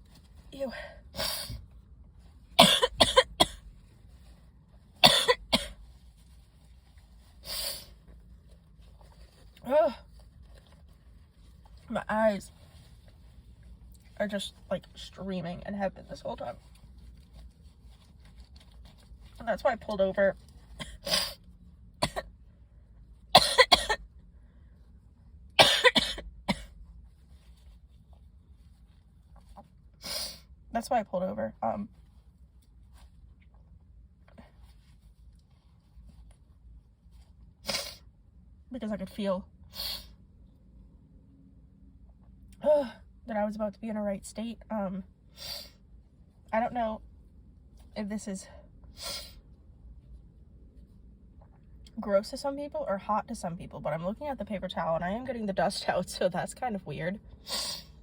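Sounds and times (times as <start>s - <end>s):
woman coughing: 2.6s - 3.6s, 5.0s - 5.8s, 22.0s - 22.3s, 23.4s - 24.0s, 25.6s - 26.7s
woman sneezing: 2.6s - 3.6s, 5.0s - 5.8s, 25.6s - 26.7s, 37.7s - 38.0s.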